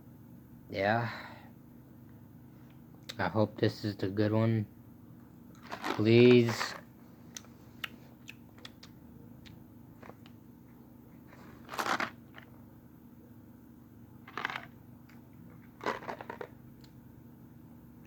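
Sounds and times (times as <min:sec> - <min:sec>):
faint steady hum: 0:00.0 - 0:18.0
crunching sounds: 0:05.5 - 0:10.4, 0:11.2 - 0:12.6, 0:14.2 - 0:17.0
person chewing jelly bean: 0:07.2 - 0:10.4, 0:14.3 - 0:17.0.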